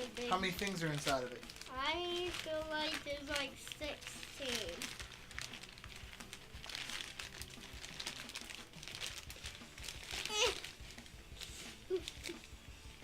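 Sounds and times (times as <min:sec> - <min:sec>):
bag and packaging crinkling: 0:00.0 - 0:12.6.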